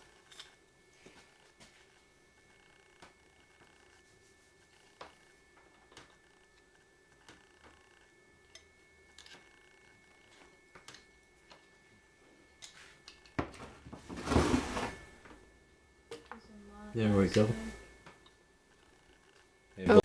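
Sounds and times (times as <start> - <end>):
loud scraping rattle: 14.1 - 15.0.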